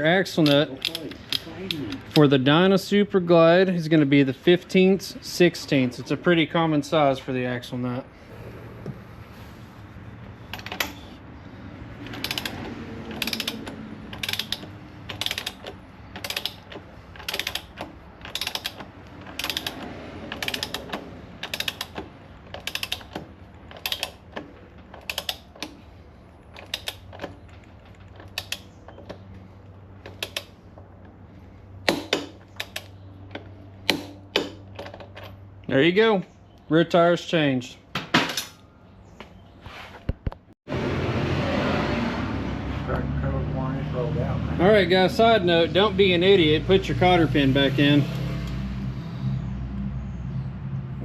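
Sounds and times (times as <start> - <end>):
ratchet wrench clicking: 12.0 - 24.4, 25.0 - 25.8.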